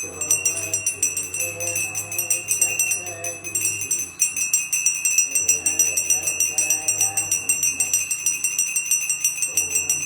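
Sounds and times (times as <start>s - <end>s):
devotional singing: 0.0s - 4.3s, 5.2s - 8.4s
hand bell ringing rapidly: 0.0s - 10.0s.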